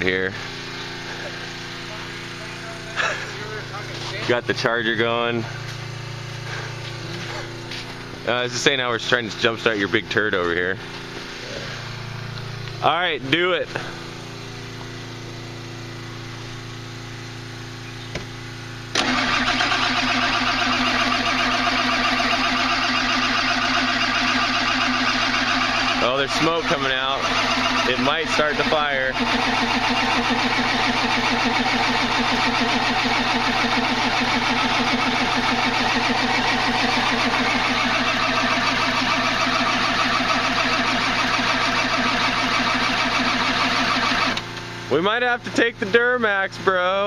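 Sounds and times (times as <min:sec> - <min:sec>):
steady engine hum: 0:00.0 - 0:47.0
diesel engine starter cranking: 0:18.8 - 0:44.9.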